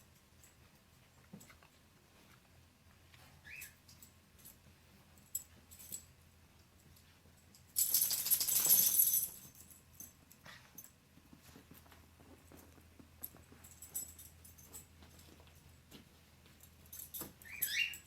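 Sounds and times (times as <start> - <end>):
dog collar tags jingling: 3.6 - 11.0, 12.5 - 15.9, 16.5 - 18.0.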